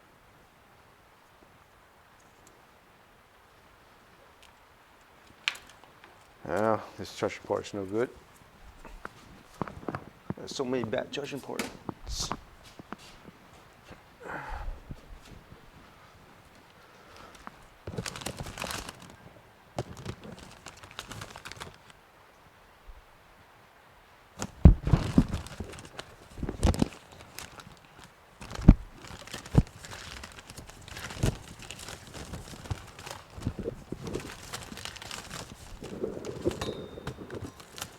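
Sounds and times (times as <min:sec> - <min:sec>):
tools handled on workbench: 0:11.6 - 0:13.3, 0:35.4 - 0:37.9.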